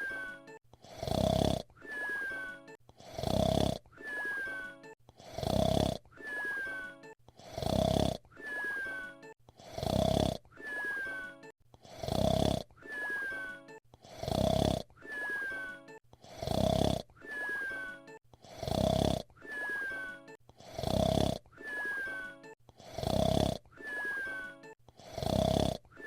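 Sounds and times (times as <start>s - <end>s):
rasping snore: 0.8s - 2.4s, 3.0s - 8.9s, 9.5s - 11.1s, 11.8s - 13.4s, 14.0s - 15.5s, 16.2s - 17.7s, 18.4s - 19.9s, 20.6s - 26.0s
falling whistle: 1.8s - 2.6s, 4.0s - 4.8s, 6.2s - 7.1s, 8.4s - 9.2s, 10.6s - 11.4s, 12.8s - 13.8s, 15.0s - 15.8s, 17.2s - 18.1s, 19.4s - 20.3s, 21.6s - 22.5s, 23.8s - 24.6s.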